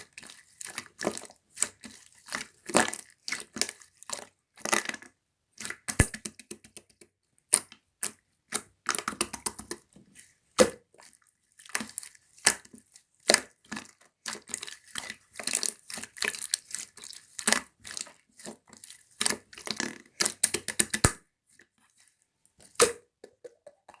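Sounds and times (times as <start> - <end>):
slime squelching by hand: 10.2 - 21.0.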